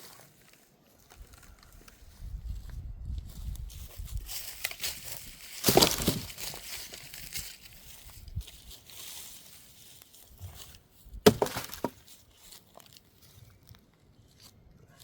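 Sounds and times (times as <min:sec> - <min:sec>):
rustling handling noise: 0:03.3 - 0:13.4.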